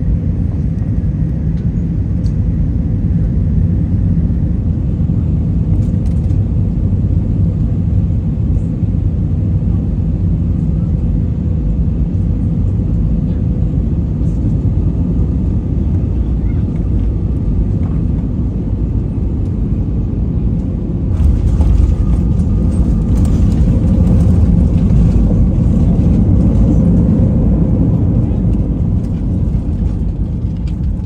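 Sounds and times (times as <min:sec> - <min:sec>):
jet cabin low rumble: 0:00.0 - 0:31.0.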